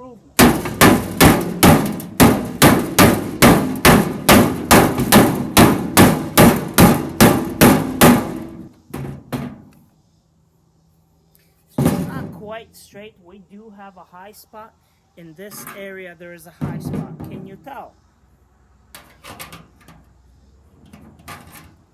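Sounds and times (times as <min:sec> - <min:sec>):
hammer blows on metal panel: 0:00.4 - 0:09.7.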